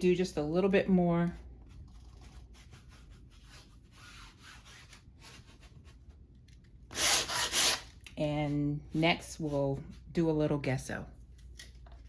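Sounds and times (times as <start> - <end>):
sandpaper rubbing on canvas: 2.6 - 5.9.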